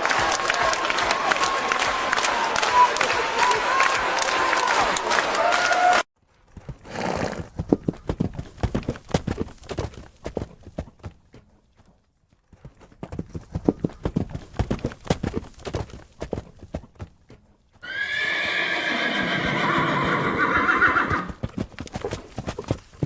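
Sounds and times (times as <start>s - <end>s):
horse hooves clip-clopping: 6.2s - 23.0s
horse whinny: 6.9s - 7.5s, 17.8s - 21.4s.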